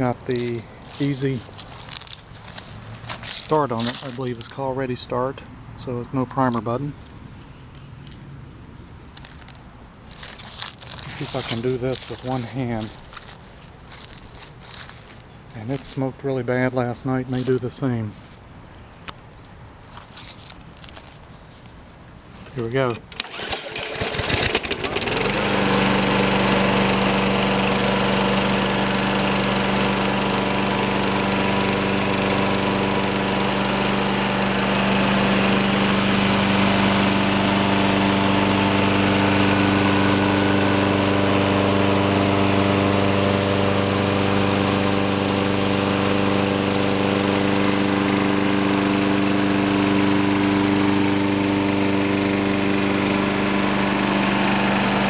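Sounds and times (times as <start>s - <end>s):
lawn mower engine running: 0.0s - 4.6s, 10.1s - 16.0s, 22.3s - 55.0s.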